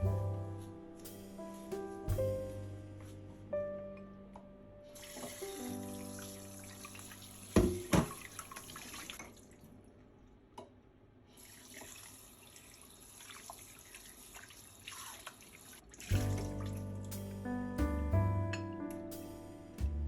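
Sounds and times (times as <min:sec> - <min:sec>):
tap water running into sink: 0:05.0 - 0:09.5, 0:11.4 - 0:17.0
water drips: 0:05.0 - 0:10.0.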